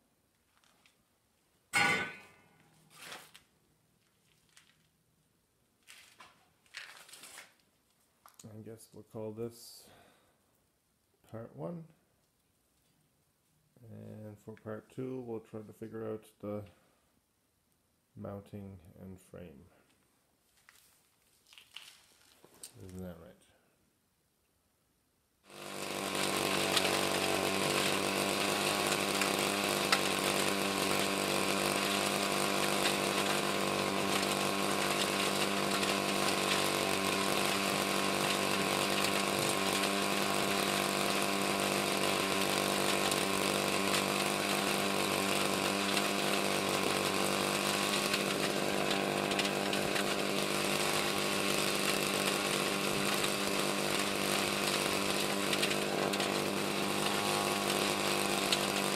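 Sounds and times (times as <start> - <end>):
motor running steadily: 25.5 - 58.9.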